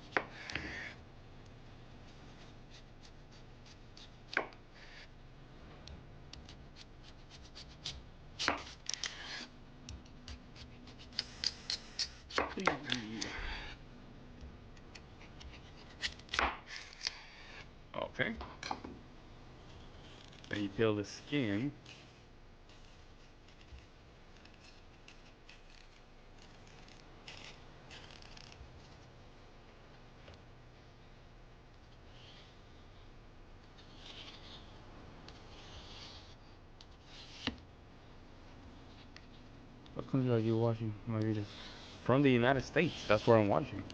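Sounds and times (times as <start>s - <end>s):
blade scraping vegetable skin: 24.4s - 28.6s, 33.8s - 34.7s.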